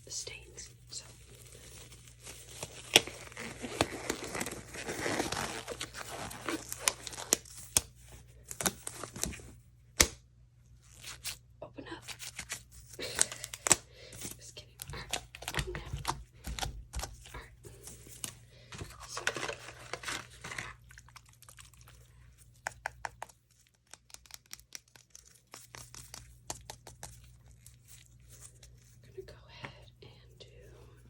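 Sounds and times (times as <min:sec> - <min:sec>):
hands kneading sticky slime: 0:12.1 - 0:29.0.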